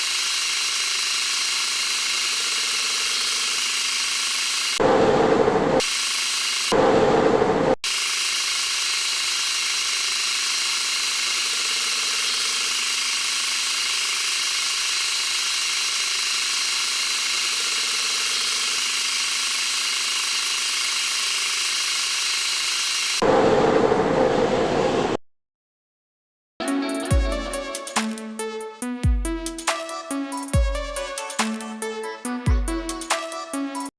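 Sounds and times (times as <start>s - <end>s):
metal lathe whining: 0.0s - 23.3s.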